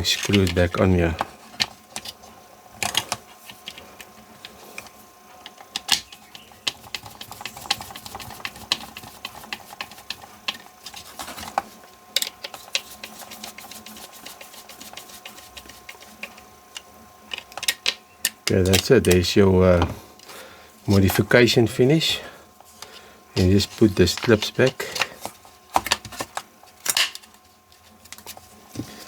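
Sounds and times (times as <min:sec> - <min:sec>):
screwdriver clicking on plastic: 0:00.0 - 0:02.2, 0:02.8 - 0:19.2.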